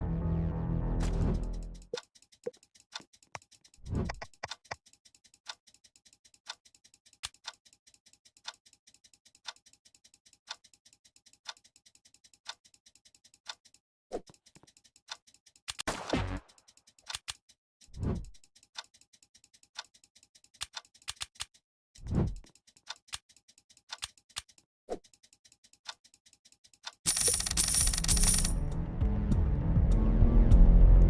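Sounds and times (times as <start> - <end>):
clock ticking: 1.9 - 13.8.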